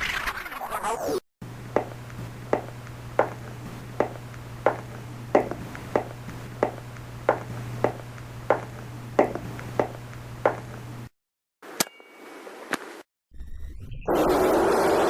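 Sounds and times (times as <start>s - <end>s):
low hum: 1.4s - 11.1s
sharp knocks or taps: 1.8s - 10.7s.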